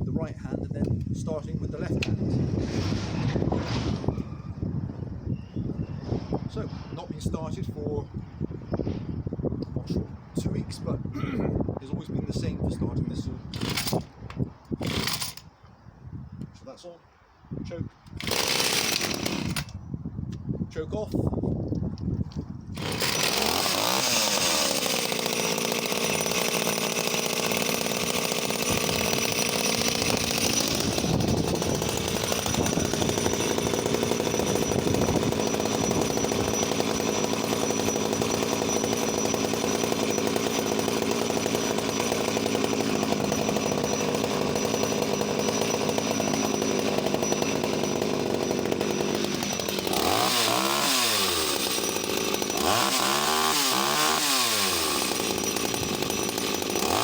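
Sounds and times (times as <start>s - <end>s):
chainsaw running: 13.5s - 14.1s, 14.8s - 15.5s, 18.1s - 19.8s, 22.8s - 57.0s.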